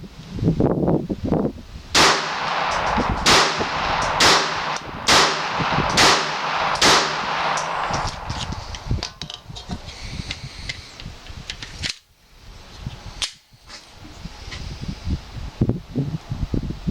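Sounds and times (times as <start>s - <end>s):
pistol shots with echo: 2.0s - 8.8s.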